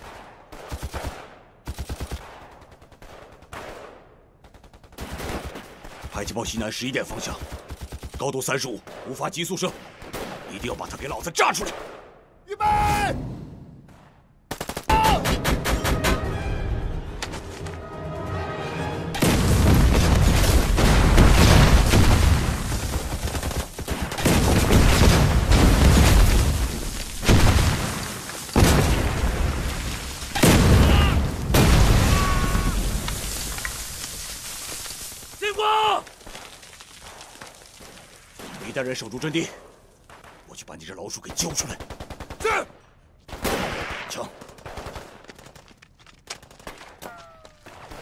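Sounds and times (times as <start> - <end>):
rifle and machine-gun fire: 0.0 - 6.2, 7.3 - 9.1, 14.5 - 16.0, 19.2 - 32.9, 41.4 - 42.5, 43.3 - 45.7
booms: 19.2 - 33.6.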